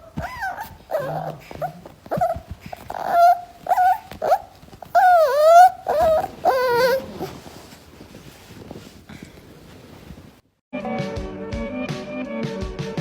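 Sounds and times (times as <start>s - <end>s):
dog whining: 0.0s - 8.0s.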